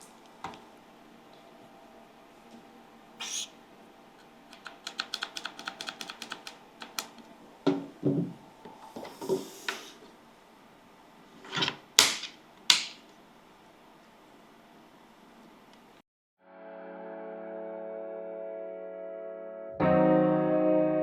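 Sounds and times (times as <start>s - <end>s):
small clicks: 4.5s - 7.2s.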